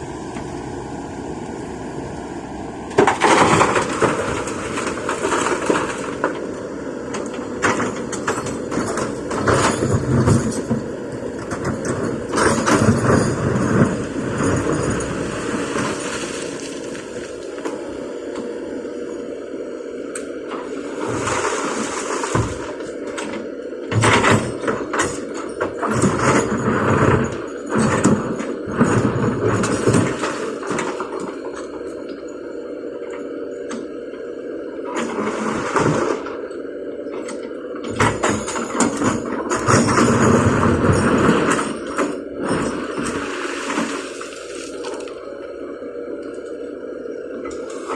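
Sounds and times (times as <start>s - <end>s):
excavator engine running: 0.0s - 47.9s
rocks dropped into truck bed: 2.9s - 6.5s, 11.4s - 17.7s, 21.1s - 23.3s.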